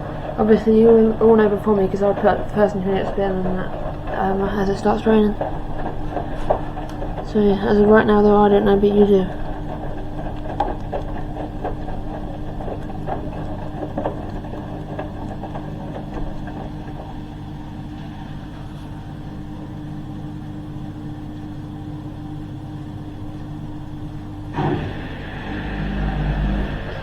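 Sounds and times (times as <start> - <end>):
drum knocking and water sloshing: 0.0 - 18.8, 24.5 - 27.0
washing machine hum: 0.0 - 27.0.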